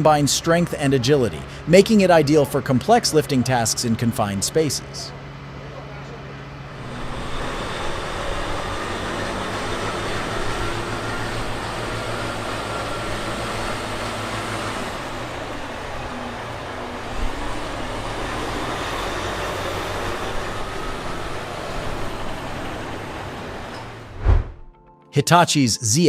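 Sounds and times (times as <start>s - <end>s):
diesel engine running: 0.0s - 24.7s
short low thump: 24.1s - 24.7s.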